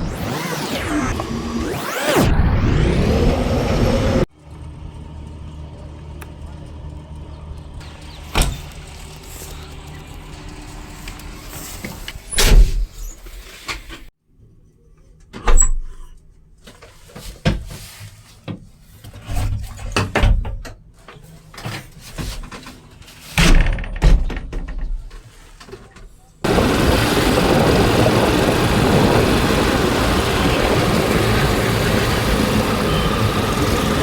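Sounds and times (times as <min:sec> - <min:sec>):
diesel machinery humming: 0:02.4 - 0:12.2, 0:26.4 - 0:34.0
thumps and clanks: 0:23.3 - 0:25.3
loud knocks and clunks: 0:23.4 - 0:25.2.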